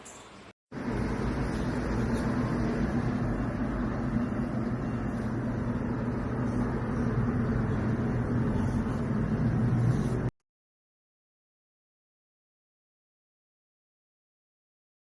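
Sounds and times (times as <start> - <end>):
washing machine humming: 0.0 - 10.3.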